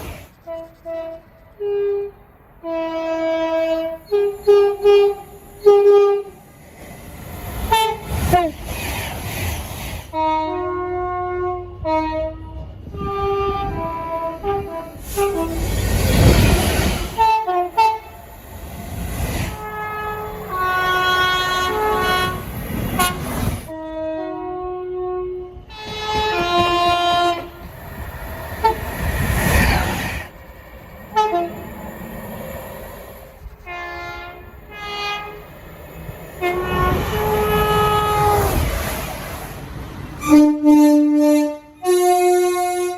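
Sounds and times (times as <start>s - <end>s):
passing trains: 0.0s - 42.9s
train air horn chords: 0.4s - 6.4s, 7.7s - 8.6s, 10.1s - 15.8s, 16.6s - 18.4s, 19.4s - 27.7s, 31.1s - 31.7s, 33.6s - 35.5s, 36.4s - 38.8s, 40.2s - 42.9s.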